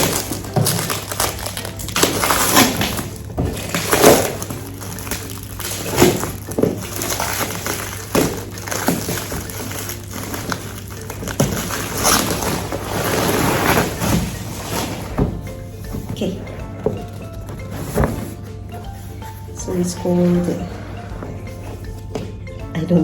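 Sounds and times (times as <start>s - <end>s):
cardboard packaging crackling and rustling: 0.0s - 22.2s.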